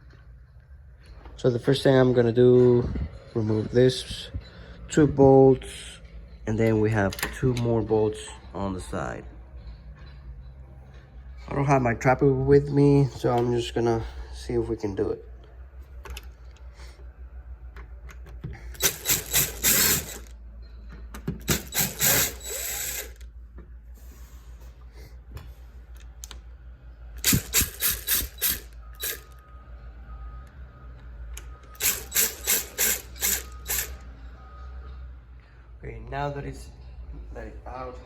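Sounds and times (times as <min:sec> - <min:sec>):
hand tool clicking on screws: 0:18.7 - 0:20.3, 0:21.4 - 0:23.2, 0:27.2 - 0:29.2, 0:31.8 - 0:33.9.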